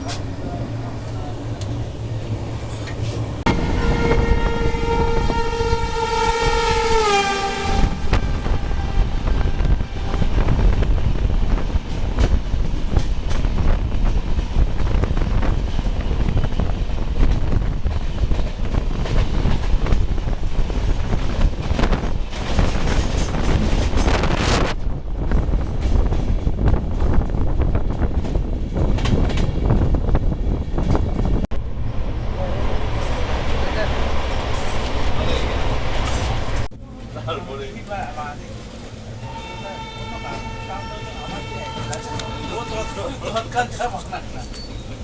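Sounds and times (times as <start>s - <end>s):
train clattering over rails: 0.0s - 45.0s
locomotive horn: 3.5s - 10.5s, 39.2s - 43.2s.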